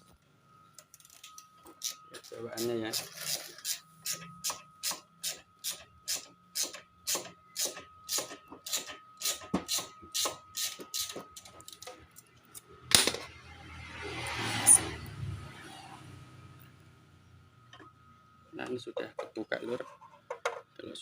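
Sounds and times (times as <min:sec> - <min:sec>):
ratchet wrench clicking: 0:02.9 - 0:11.2.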